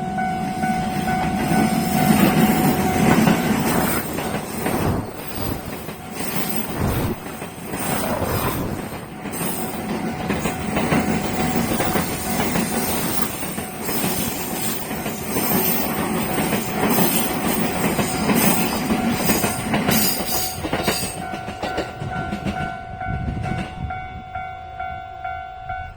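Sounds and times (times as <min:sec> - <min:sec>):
train wheels clacking over rails: 0:00.0 - 0:23.8
crossing warning bell ringing: 0:00.0 - 0:25.9.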